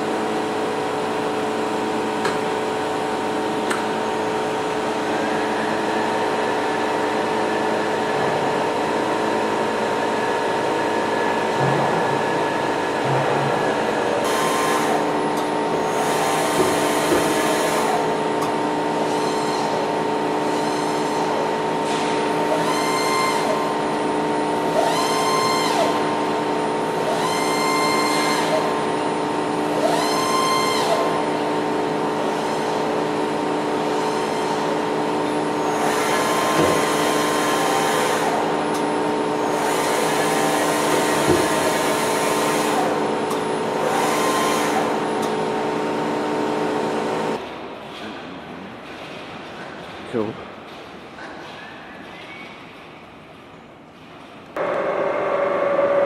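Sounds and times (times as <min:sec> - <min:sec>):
milling machine hum: 0:00.0 - 0:47.4, 0:54.6 - 0:56.0
short rising and falling whines: 0:54.6 - 0:56.0.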